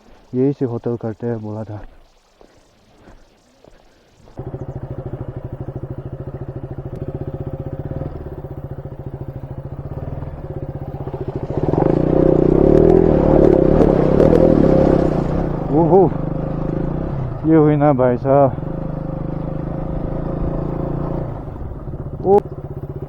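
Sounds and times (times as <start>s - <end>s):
motorcycle engine idling and revving: 4.3s - 23.0s.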